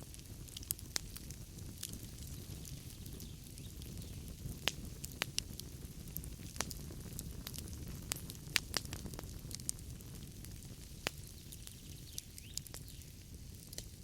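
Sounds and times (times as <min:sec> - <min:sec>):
fire rumbling: 0:00.0 - 0:14.0
logs crackling and popping: 0:00.0 - 0:14.0.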